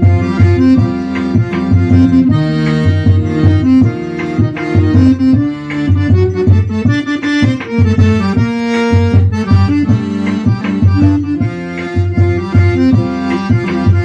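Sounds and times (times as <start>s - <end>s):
accordion playing: 0.0s - 14.0s
pulsing bass beat: 0.0s - 14.0s.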